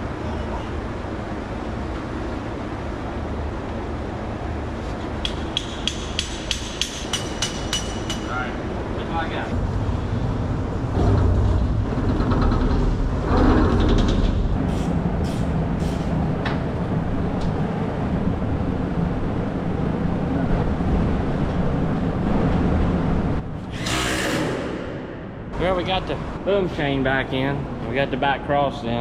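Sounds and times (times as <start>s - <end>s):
large engine running: 8.8s - 21.1s.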